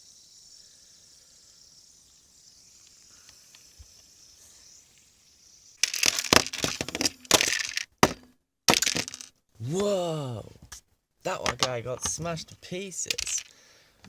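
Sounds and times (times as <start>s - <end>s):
fidget spinner clattering on plastic: 5.8s - 9.3s, 13.0s - 13.5s.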